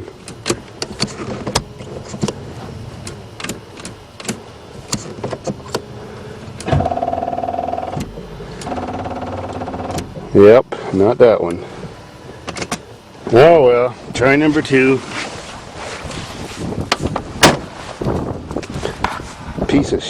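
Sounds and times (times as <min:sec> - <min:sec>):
starter motor whirring: 0:03.0 - 0:10.4.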